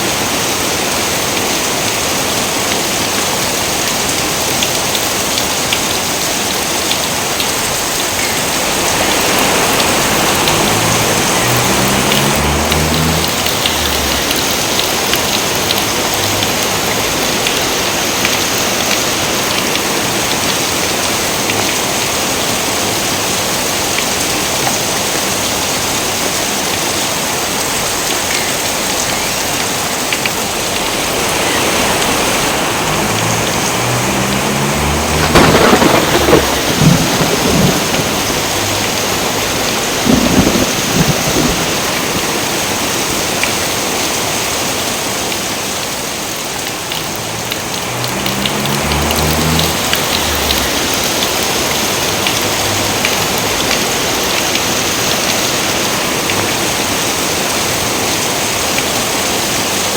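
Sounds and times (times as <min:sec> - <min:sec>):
heavy rain: 0:00.0 - 0:59.9
thunder crack and rumble: 0:07.5 - 0:17.6, 0:32.8 - 0:42.6, 0:47.0 - 0:54.0.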